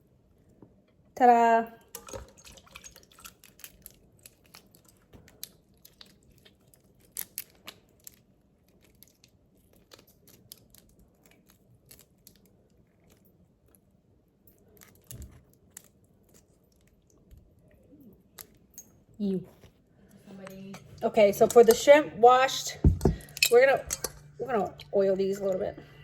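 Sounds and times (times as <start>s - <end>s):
shrimp shell clicks and crackles: 3.0s - 19.0s.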